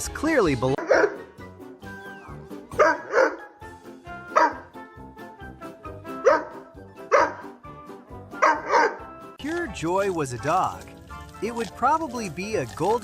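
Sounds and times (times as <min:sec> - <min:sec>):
background music: 0:00.0 - 0:13.0
dog barking: 0:00.8 - 0:01.3, 0:02.8 - 0:03.5, 0:04.3 - 0:04.7, 0:06.2 - 0:07.6, 0:08.4 - 0:09.1.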